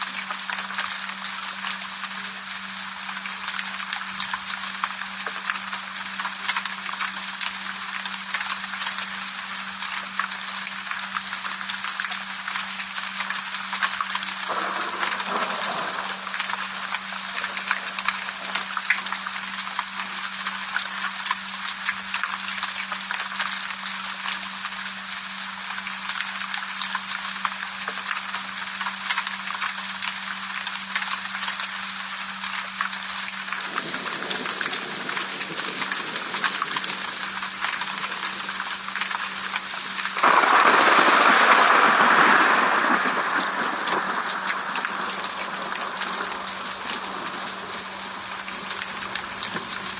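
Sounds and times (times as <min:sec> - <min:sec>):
rain falling: 0:00.0 - 0:49.9
low hum: 0:13.8 - 0:20.5.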